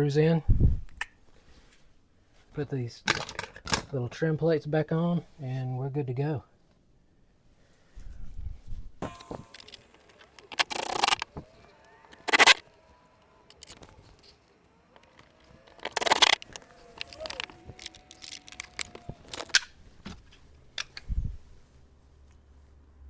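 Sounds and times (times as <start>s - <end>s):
scrapes and clicks on door panel: 12.2s - 12.6s, 15.7s - 19.5s.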